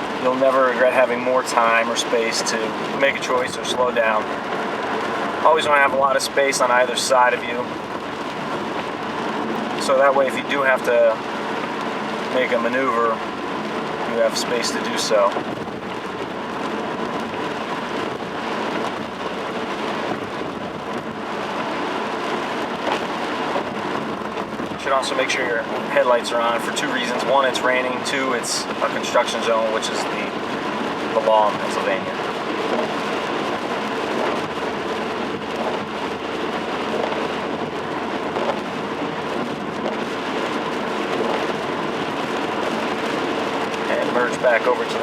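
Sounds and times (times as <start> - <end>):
rain hissing: 0.0 - 45.0
tyres on a wet road: 0.0 - 45.0.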